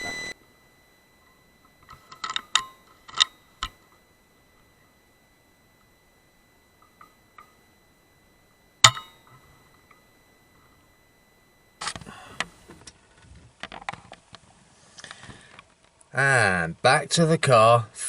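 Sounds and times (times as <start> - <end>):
small beeps: 0.0 - 12.9
high electronic whine: 0.0 - 14.1
handling clicks and rustling: 1.2 - 5.0, 11.8 - 16.1.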